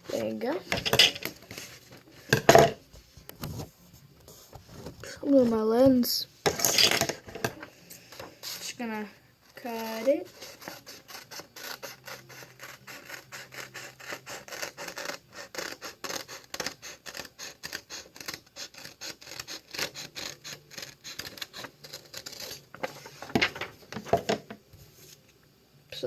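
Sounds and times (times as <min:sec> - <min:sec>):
scissors snipping paper: 0:09.7 - 0:22.9.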